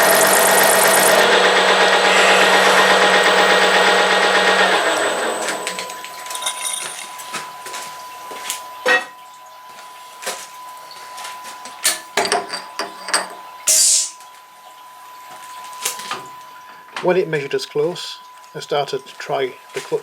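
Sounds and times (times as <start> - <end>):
steady high whine: 0.0 - 7.1
loud hiss: 13.7 - 14.2.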